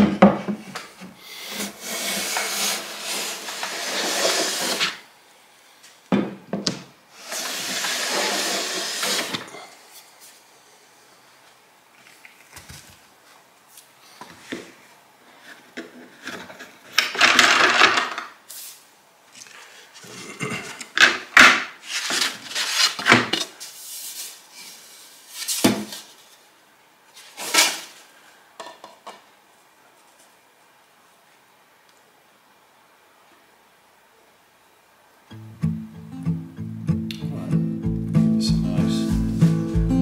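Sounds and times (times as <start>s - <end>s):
hand plane shaving wood: 1.5s - 5.0s, 7.2s - 9.4s.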